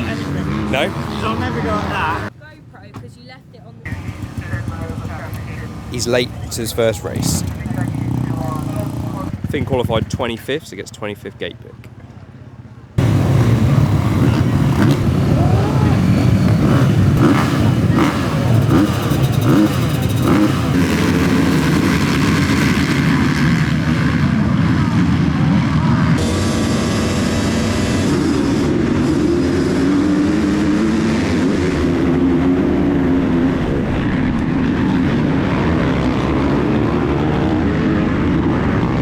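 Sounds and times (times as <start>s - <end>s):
motocross bikes revving: 0.0s - 12.1s, 13.0s - 39.0s.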